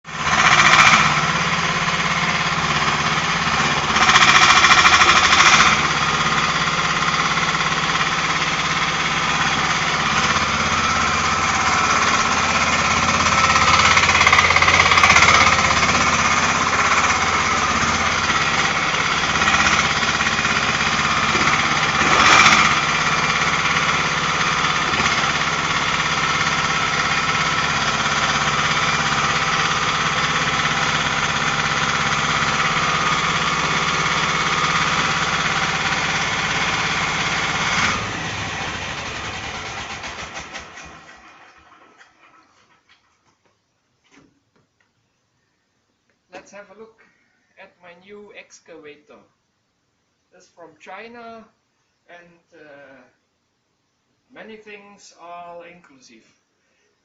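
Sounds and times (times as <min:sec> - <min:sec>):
excavator engine running: 0:00.1 - 0:43.1.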